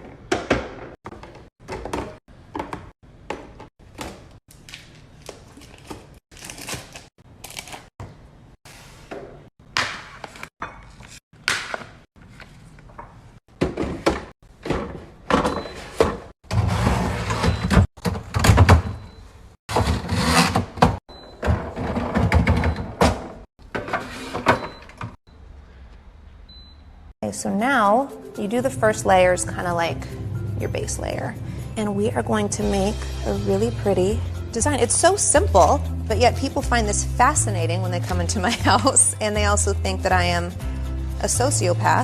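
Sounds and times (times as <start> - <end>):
containers thunking and clattering: 0.0 - 4.3, 13.5 - 19.0, 19.7 - 25.2.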